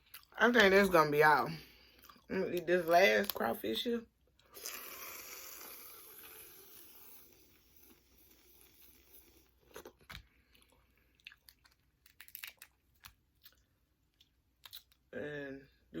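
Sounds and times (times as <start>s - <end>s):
crawfish shell crunching: 9.1s - 15.1s.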